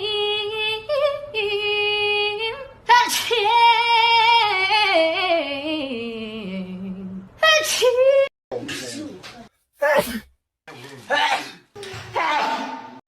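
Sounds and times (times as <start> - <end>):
person sung-out sneeze: 9.8 - 10.3.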